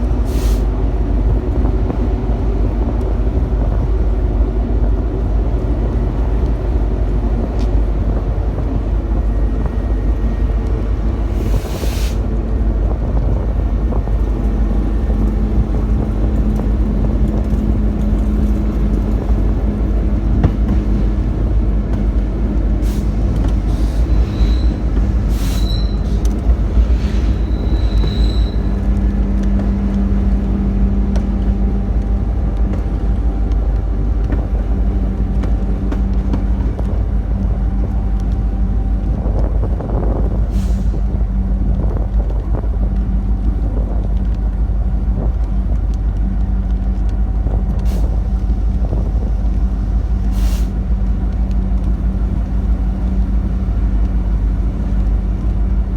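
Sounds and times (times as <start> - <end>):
vehicle rumbling: 0.0 - 55.9
short high squeal: 23.8 - 26.2, 27.1 - 28.8.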